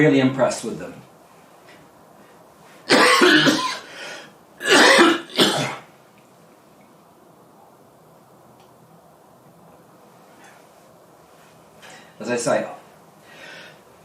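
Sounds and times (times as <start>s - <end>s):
man coughing: 2.9s - 3.9s, 4.6s - 5.9s.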